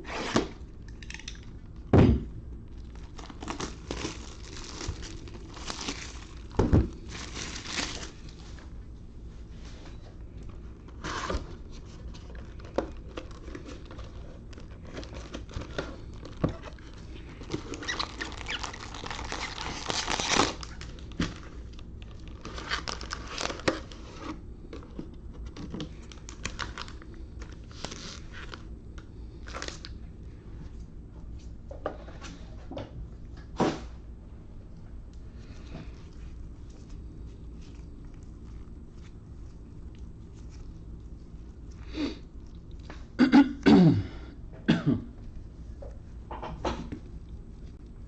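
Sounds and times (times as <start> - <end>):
plastic wrapping crinkling and tearing: 2.7 - 8.7, 11.0 - 28.7, 29.3 - 30.0.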